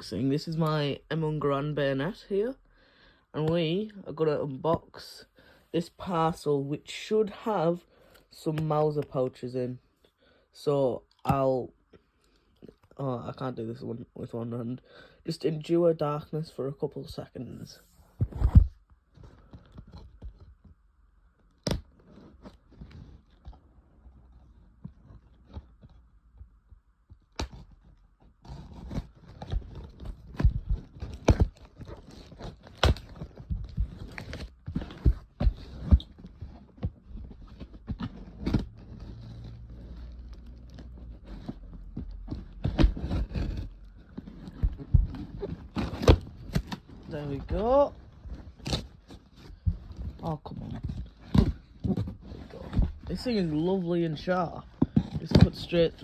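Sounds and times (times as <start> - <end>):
cardboard parcel handling noises: 27.2 - 56.0.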